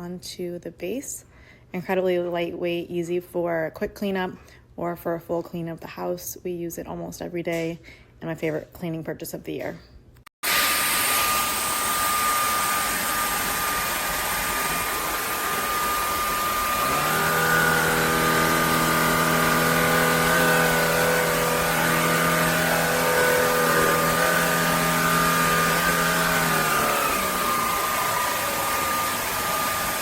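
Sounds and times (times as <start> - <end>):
stick vacuum running: 10.4 - 30.0
lower-pitched motor hum: 10.7 - 30.0.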